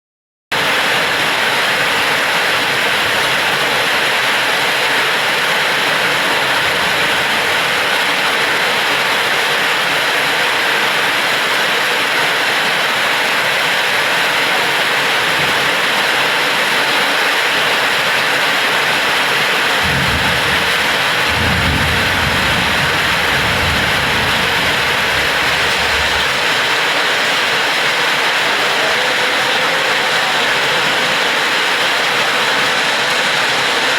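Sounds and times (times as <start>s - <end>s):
heavy rain: 0.5s - 33.9s
thunder rumbling: 19.7s - 26.8s.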